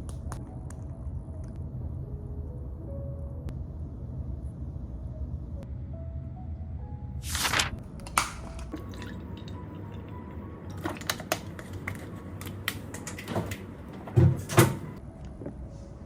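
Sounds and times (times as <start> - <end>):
objects clicking and knocking: 10.7 - 13.7.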